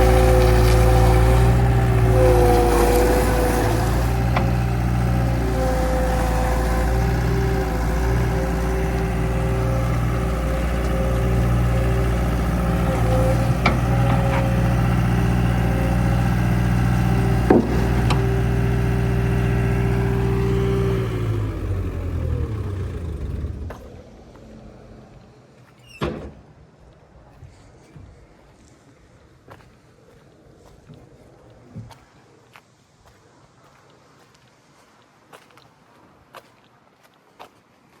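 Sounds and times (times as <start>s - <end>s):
skid steer engine running: 0.0s - 26.3s.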